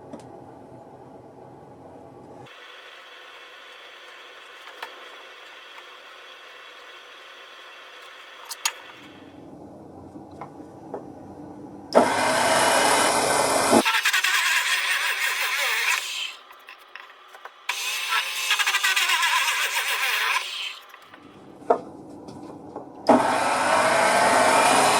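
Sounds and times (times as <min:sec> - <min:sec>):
wood rasping by hand: 0:13.8 - 0:16.9, 0:17.7 - 0:21.2.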